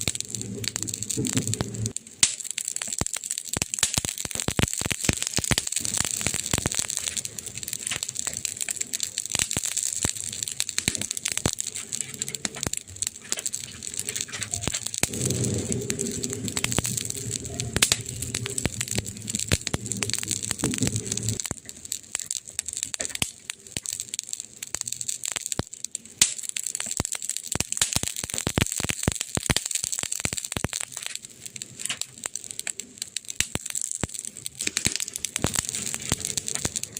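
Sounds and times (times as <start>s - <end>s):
wood fire crackling and popping: 0.0s - 36.9s
low tonal murmur: 13.8s - 21.4s.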